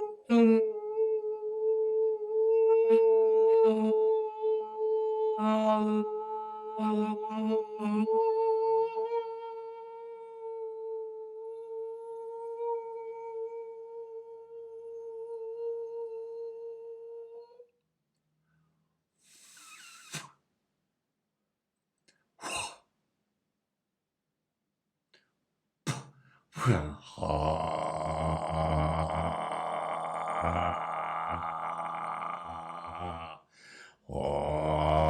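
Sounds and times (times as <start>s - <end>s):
person breathing: 19.2s - 20.3s, 30.3s - 34.2s
man vocal toning: 22.4s - 22.8s, 25.9s - 33.4s.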